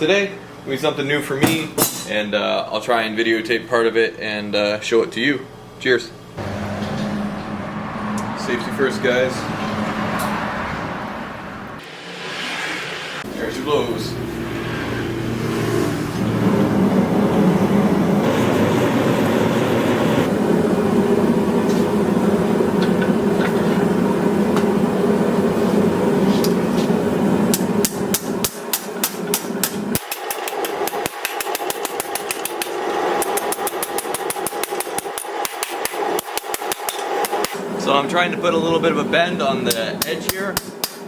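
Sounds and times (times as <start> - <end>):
hammer striking steel on anvil: 27.5 - 37.6, 39.7 - 41.0.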